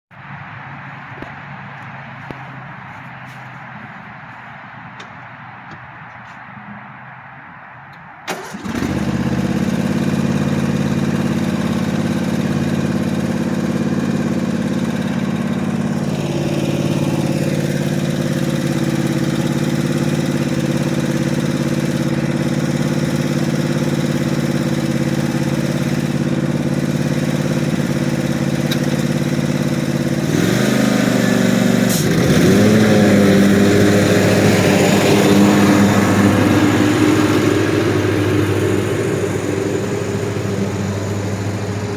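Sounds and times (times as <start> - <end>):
mower engine cranking: 8.3 - 41.9
mower engine idling: 8.3 - 41.9.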